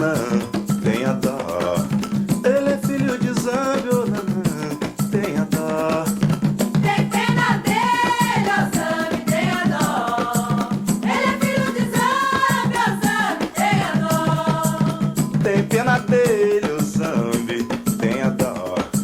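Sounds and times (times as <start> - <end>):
percussion beat with shakers: 0.0 - 19.0
voices singing together: 6.8 - 19.0.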